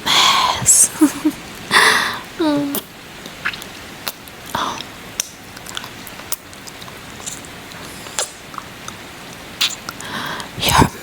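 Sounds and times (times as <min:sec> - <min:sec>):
wet kissing and lip-smacking: 0:02.7 - 0:10.0.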